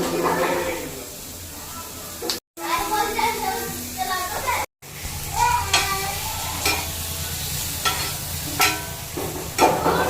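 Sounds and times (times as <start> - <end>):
food sizzling in a pan: 0.0 - 10.0.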